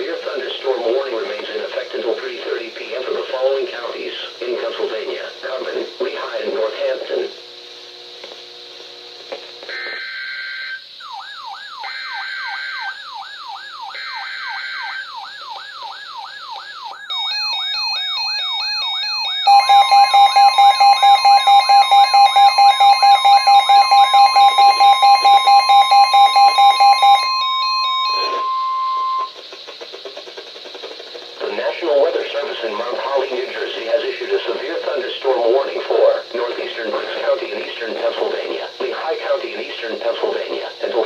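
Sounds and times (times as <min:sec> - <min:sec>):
steady warning alarm tone: 0:09.7 - 0:29.4
warbling alert siren: 0:09.7 - 0:29.4
loud rapid beeping: 0:10.7 - 0:29.4
buzzing data bursts: 0:17.0 - 0:30.0.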